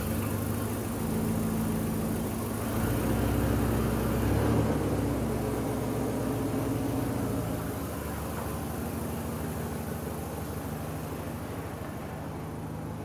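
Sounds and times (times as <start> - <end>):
pickup truck engine idling: 0.0 - 2.8.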